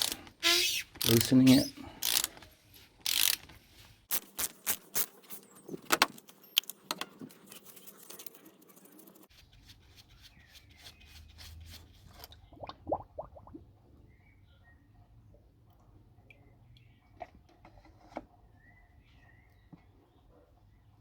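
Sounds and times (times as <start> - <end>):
ratchet clicking: 0.0 - 0.2, 0.8 - 2.4, 3.0 - 3.5.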